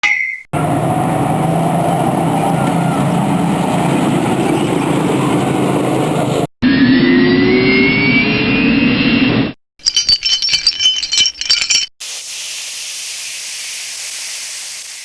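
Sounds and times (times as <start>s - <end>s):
rising whine: 6.6s - 9.6s.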